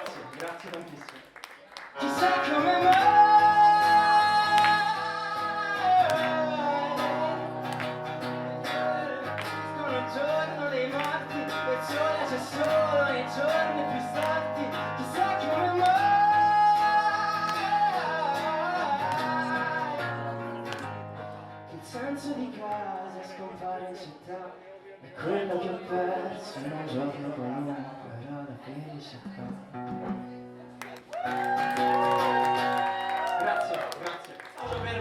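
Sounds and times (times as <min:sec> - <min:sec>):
guitar strumming: 0:02.0 - 0:22.0, 0:29.3 - 0:30.8.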